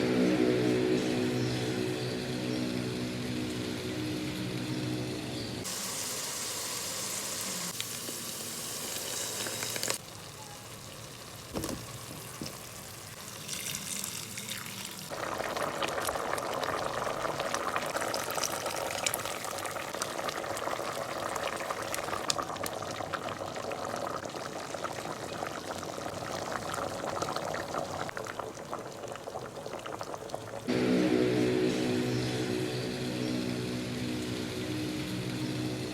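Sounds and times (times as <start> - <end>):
hot oil sizzling: 0.0 - 28.1, 29.1 - 35.9
pot bubbling and crackling: 6.9 - 30.7
liquid pouring: 11.3 - 30.6.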